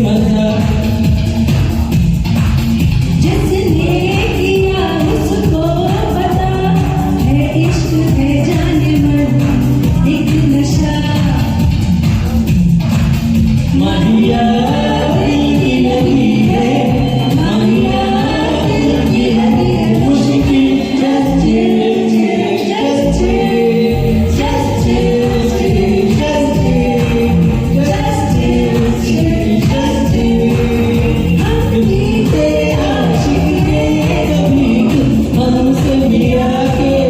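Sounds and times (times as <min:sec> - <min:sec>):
pop karaoke backing track: 0:00.0 - 0:37.0
person singing: 0:13.7 - 0:37.0.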